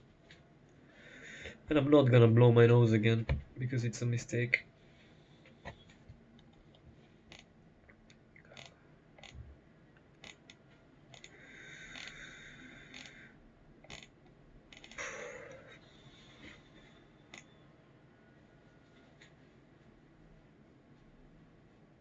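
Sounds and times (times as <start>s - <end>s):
faint clicks and handling noises: 5.0s - 12.2s, 13.8s - 17.6s, 18.8s - 20.0s.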